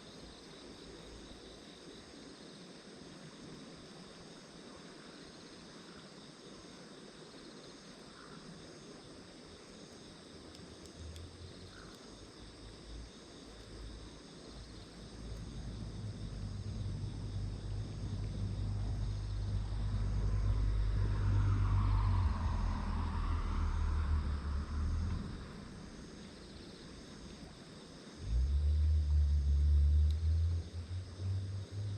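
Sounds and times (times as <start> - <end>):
insects chirring: 0.0 - 31.9
distant engine rumble: 13.7 - 27.6, 28.2 - 31.9.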